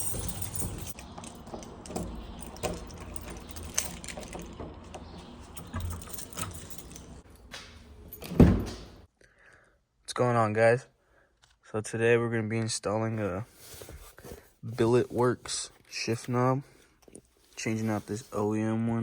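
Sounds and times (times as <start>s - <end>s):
light clicks and rattles: 0.0s - 8.9s.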